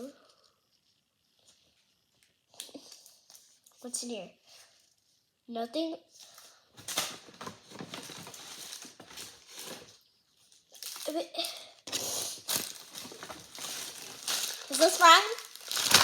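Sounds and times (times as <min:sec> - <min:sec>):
wrappers crinkling and rustling: 0:06.2 - 0:16.0.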